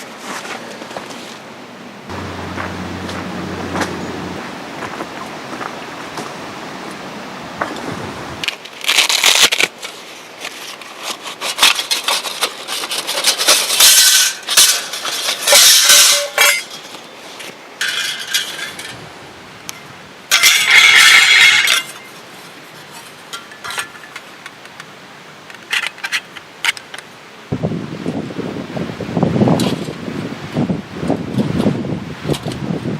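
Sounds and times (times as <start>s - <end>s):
objects scraping and clinking: 8.5s - 19.0s, 20.3s - 24.3s.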